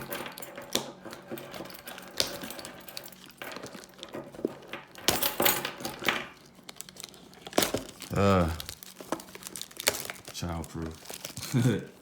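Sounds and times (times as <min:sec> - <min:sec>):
keys jangling and scraping: 0:00.0 - 0:06.5
plastic wrapping crinkling: 0:03.1 - 0:12.0.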